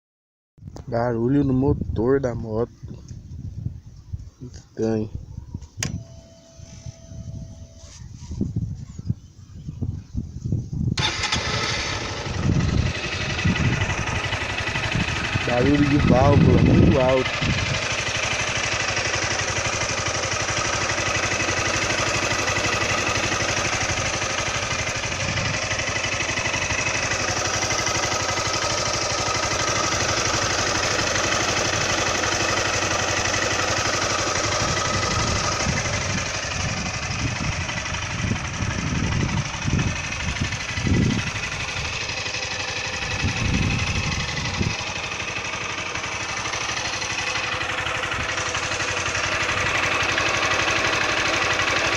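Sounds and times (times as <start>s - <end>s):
motorcycle engine idling: 1.7s - 51.9s.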